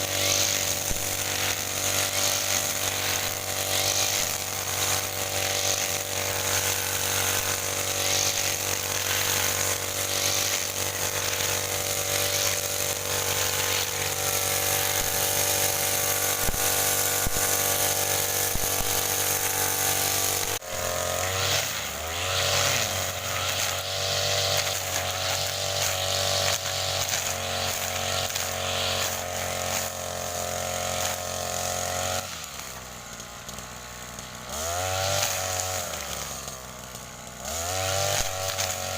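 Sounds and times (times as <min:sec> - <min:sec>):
brush cutter motor running: 0:00.0 - 0:38.9.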